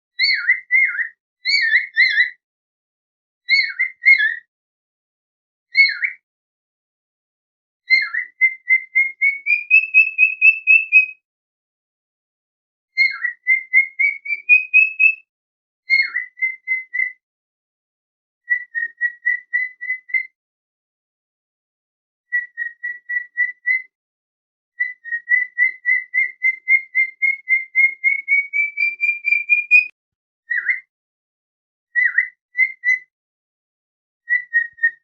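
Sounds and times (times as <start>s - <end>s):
cockatiel whistling: 0.2s - 2.4s, 3.5s - 4.5s, 5.8s - 6.2s, 7.9s - 11.1s, 13.0s - 15.2s, 15.9s - 17.2s, 18.5s - 20.3s, 22.3s - 23.9s, 24.8s - 29.9s, 30.5s - 30.9s, 32.0s - 33.1s, 34.3s - 35.0s.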